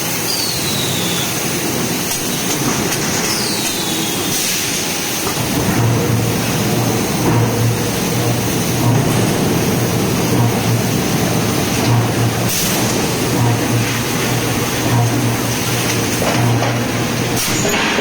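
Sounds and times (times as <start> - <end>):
forging machinery running: 0.0 - 18.0
low pulsing hum: 5.2 - 17.4.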